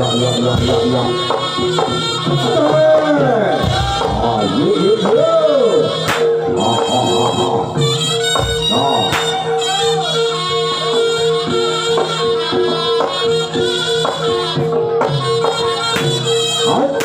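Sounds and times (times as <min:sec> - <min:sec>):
reedy wind instrument melody: 0:00.0 - 0:17.0
drum strokes: 0:11.4 - 0:17.0.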